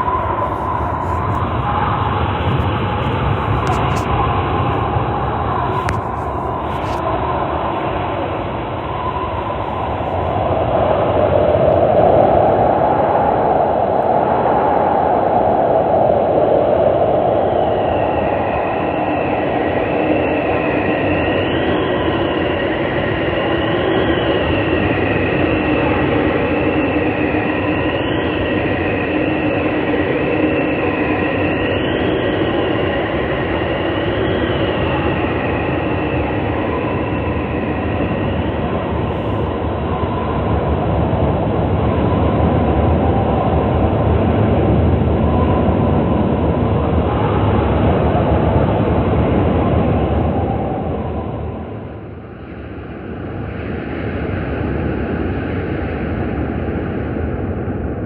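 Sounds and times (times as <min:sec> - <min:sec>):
high wavering whistling tone: 0:00.0 - 0:11.0, 0:17.2 - 0:40.4
loud rumbling rushing noise: 0:00.0 - 0:12.6, 0:32.6 - 0:51.8.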